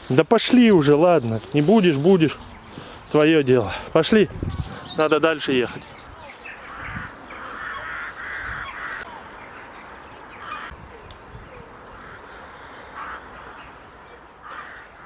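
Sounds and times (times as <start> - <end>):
bird cawing: 5.8 - 10.7, 11.9 - 15.0.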